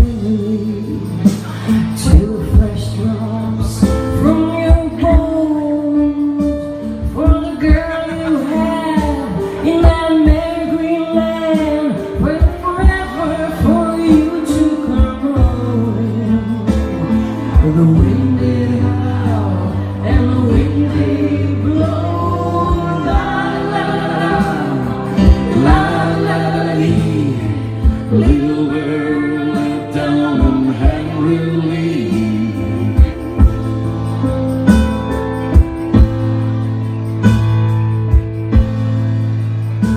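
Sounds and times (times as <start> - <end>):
person singing: 0.0 - 35.8
acoustic band playing: 0.0 - 39.9.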